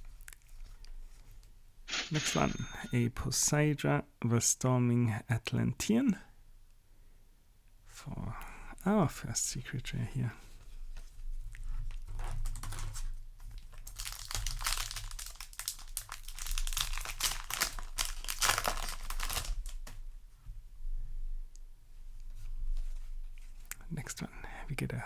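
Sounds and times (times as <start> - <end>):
foil wrapper crinkling: 12.4 - 20.0
cards rustling: 13.9 - 20.0.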